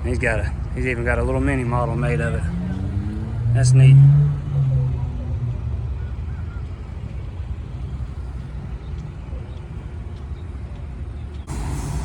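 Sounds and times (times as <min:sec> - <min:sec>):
engine idling: 0:04.9 - 0:12.0.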